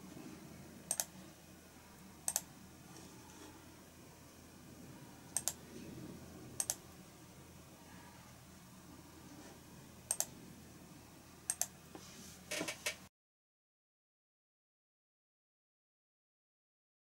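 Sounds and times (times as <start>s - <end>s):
faint room hum: 0.0s - 13.1s
computer mouse clicks: 0.9s - 1.1s, 2.2s - 2.5s, 5.4s - 5.6s, 6.6s - 6.8s, 10.1s - 10.3s, 11.5s - 11.8s.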